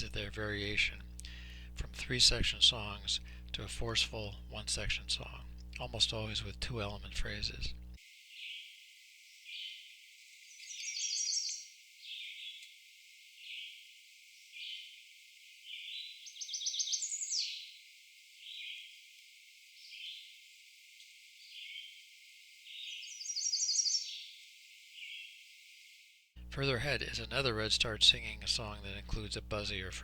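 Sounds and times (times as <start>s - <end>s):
bird repeating song phrases: 0.0s - 7.8s, 10.6s - 12.5s, 15.9s - 17.6s, 22.7s - 24.2s, 26.4s - 30.0s.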